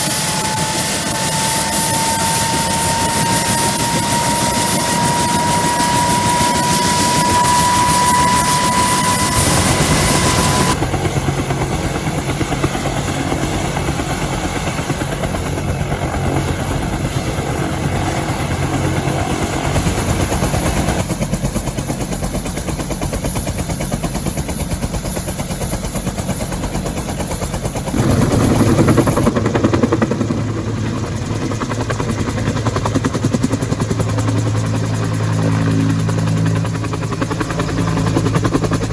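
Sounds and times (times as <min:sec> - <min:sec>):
turbine whine rising in pitch: 0:00.0 - 0:10.8
helicopter running: 0:00.0 - 0:38.9.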